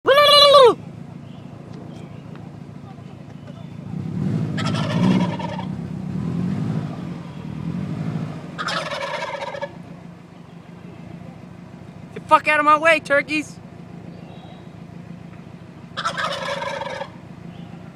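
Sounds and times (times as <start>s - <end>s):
turkeys gobbling: 0.1s - 0.8s, 4.6s - 5.8s, 8.6s - 11.0s, 15.9s - 17.9s
car engine idling: 0.1s - 17.9s.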